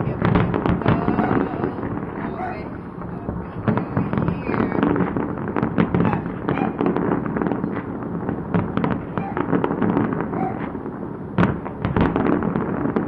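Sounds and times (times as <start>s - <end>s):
faint voices: 0.0s - 5.1s
continuous low rumble: 0.0s - 13.0s
fireworks bangs and crackles: 0.0s - 13.0s.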